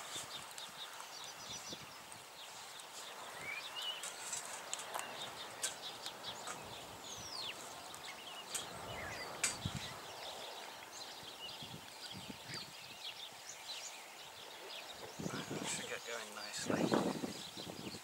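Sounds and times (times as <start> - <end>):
wood fire crackling: 0.0 - 16.7
birds calling: 0.0 - 18.0
fire pops and cracks: 0.1 - 1.1, 3.9 - 6.6, 7.9 - 10.0.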